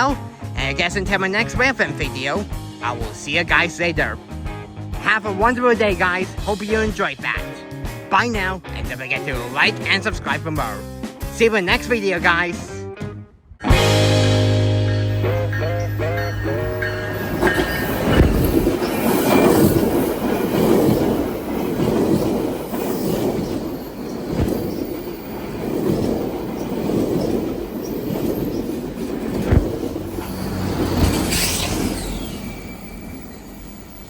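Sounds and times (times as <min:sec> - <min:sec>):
train wheels clacking over rail joints: 0:17.2 - 0:32.2.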